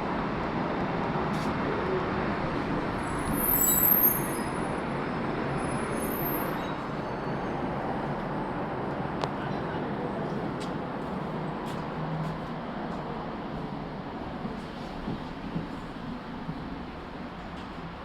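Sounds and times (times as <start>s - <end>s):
light rail train rumble: 0.0s - 18.0s
high-pitched wheel squeal: 3.0s - 4.7s, 5.6s - 7.5s.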